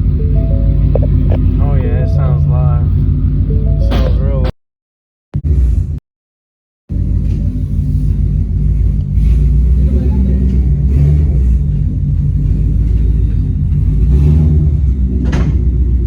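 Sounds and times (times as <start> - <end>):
car engine idling: 0.0 - 4.5, 6.9 - 16.0.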